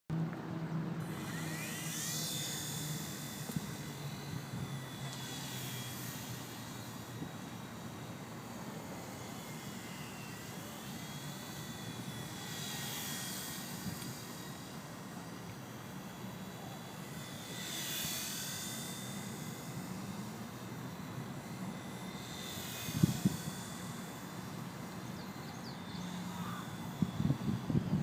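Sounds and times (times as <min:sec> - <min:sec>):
toy helicopter motor whining: 0:01.0 - 0:28.0
wind noise: 0:22.8 - 0:23.6, 0:26.9 - 0:28.0.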